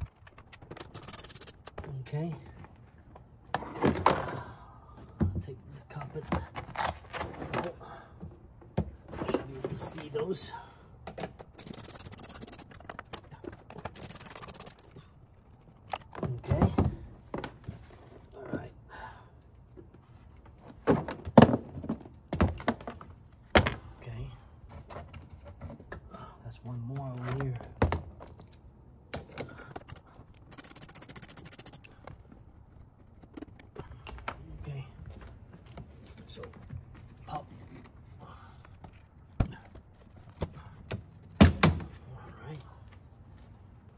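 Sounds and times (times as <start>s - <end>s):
rapid clicking and scraping: 0.0s - 1.8s, 11.4s - 16.1s, 29.7s - 32.3s.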